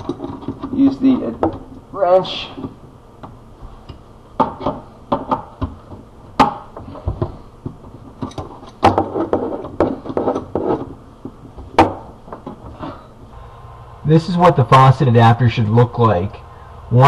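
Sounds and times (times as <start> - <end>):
wrench clicking and knocking on metal: 2.6 - 10.8.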